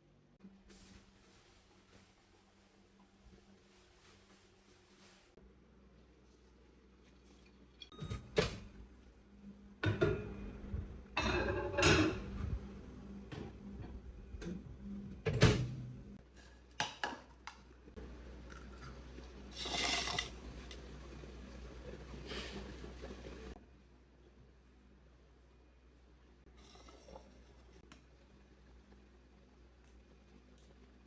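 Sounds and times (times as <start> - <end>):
dishes and utensils knocking: 9.8 - 10.4, 11.2 - 12.4.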